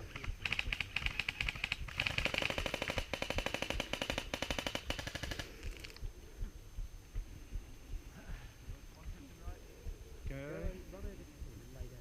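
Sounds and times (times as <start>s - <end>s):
airsoft gun firing full auto: 0.1s - 5.5s.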